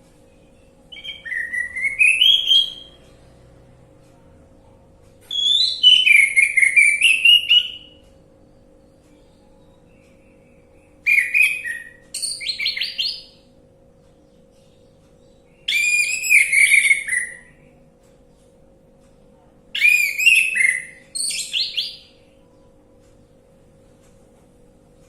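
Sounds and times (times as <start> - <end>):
faint steady hum: 0.0 - 25.0
thrush singing whistled phrases: 0.9 - 2.9, 15.7 - 17.6.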